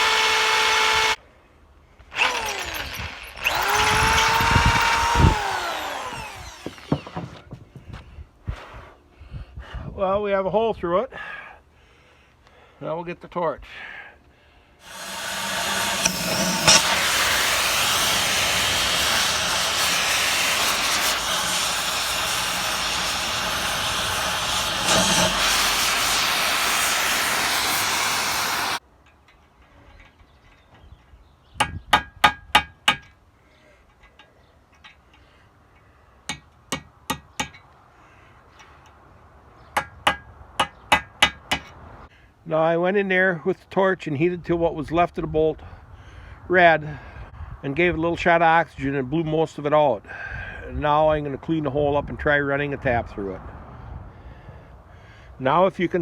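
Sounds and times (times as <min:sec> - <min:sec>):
cutting torch hissing: 0:14.8 - 0:28.8.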